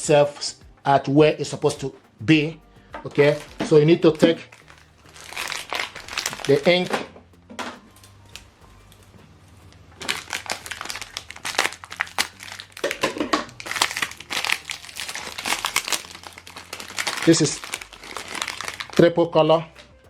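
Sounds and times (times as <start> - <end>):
plastic packaging crinkling: 3.1 - 7.1, 10.0 - 19.2.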